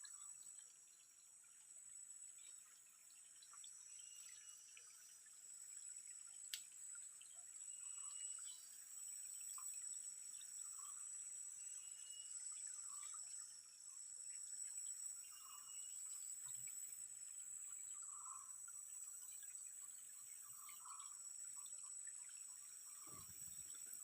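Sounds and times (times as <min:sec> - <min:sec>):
faint trickling water: 0:00.0 - 0:24.0
high-pitched insect drone: 0:10.7 - 0:13.6, 0:14.5 - 0:17.0, 0:17.6 - 0:24.0.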